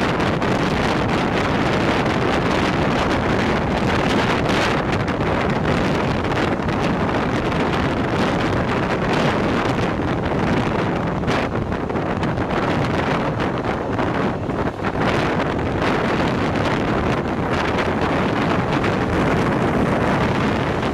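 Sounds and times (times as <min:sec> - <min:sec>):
moving train running noise: 0:00.0 - 0:20.9
wind buffeting microphone: 0:00.0 - 0:20.9.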